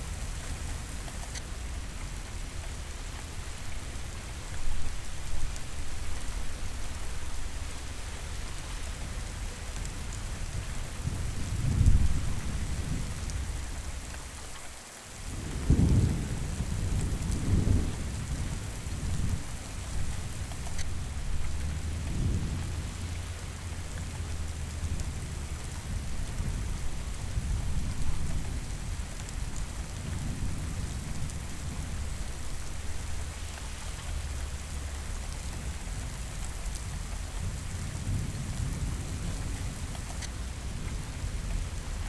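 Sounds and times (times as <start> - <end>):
steady rain: 0.0 - 42.0
low rolling thunder: 10.3 - 14.1, 15.2 - 42.0.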